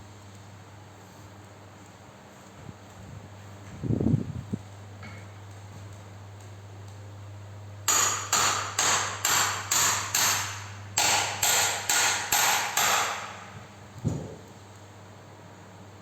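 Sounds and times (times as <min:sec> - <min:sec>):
hammer striking metal: 0:07.9 - 0:13.5.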